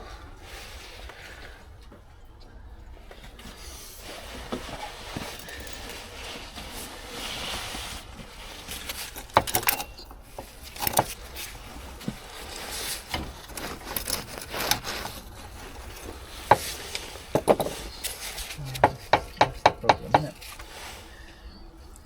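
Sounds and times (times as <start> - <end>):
hand tools on metal parts: 4.5 - 6.2, 8.6 - 21.0
sharp knocks: 18.8 - 20.4.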